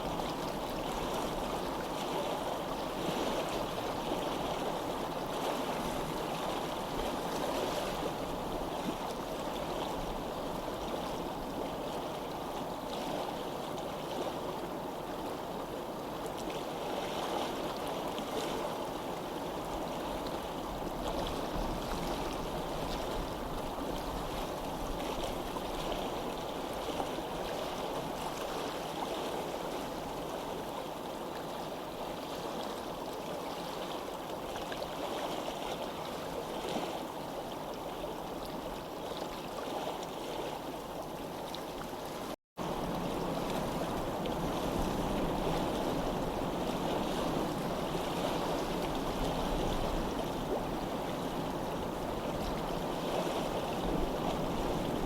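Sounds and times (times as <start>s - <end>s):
stream water flowing: 0.0s - 55.0s.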